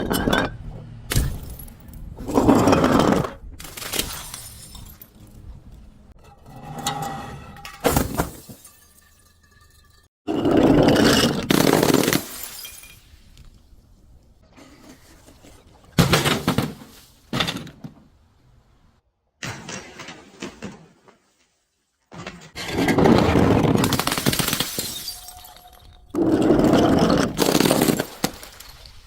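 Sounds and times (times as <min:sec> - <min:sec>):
glass crushing and breaking: 0:03.6 - 0:05.4, 0:07.5 - 0:10.1, 0:11.0 - 0:13.4, 0:22.9 - 0:29.0.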